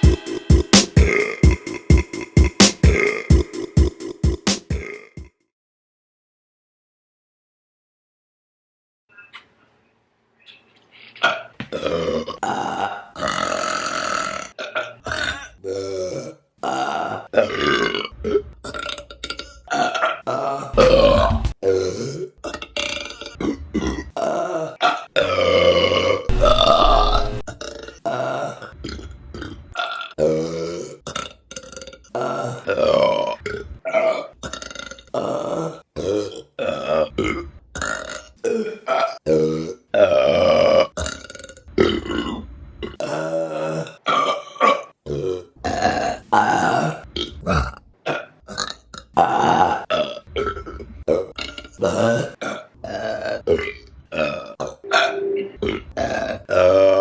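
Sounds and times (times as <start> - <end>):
women burping: 47.4 - 48.2.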